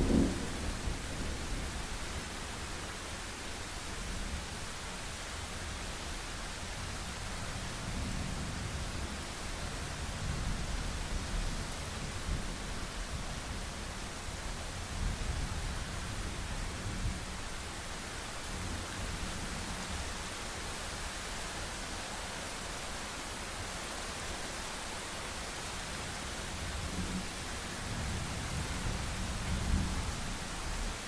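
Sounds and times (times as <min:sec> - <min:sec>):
distant thunder rumble: 0:00.0 - 0:01.9
heavy rain: 0:00.0 - 0:31.0.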